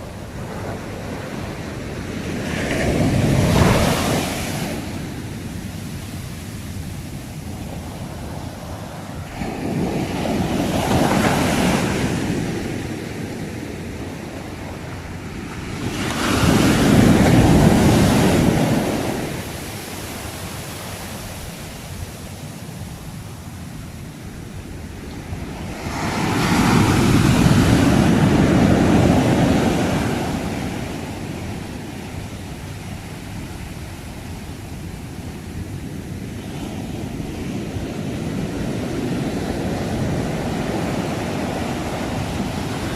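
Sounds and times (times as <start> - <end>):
waves crashing on shore: 0.0 - 42.9
steady surf hiss: 17.9 - 28.3.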